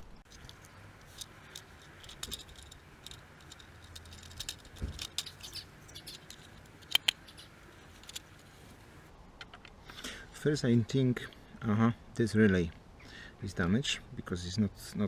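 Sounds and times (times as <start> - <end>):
switch parts clicking and scraping: 0.0 - 9.1.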